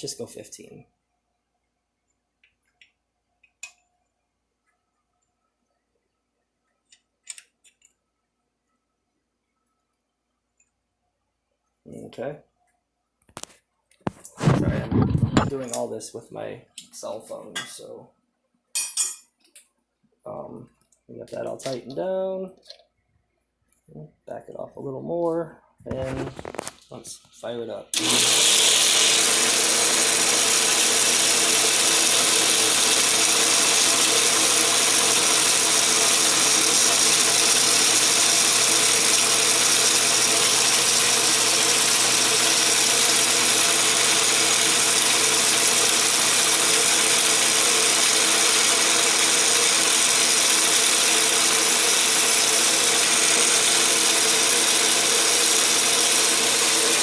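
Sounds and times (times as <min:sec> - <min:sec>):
lathe running with gear whine: 0:28.0 - 0:57.0.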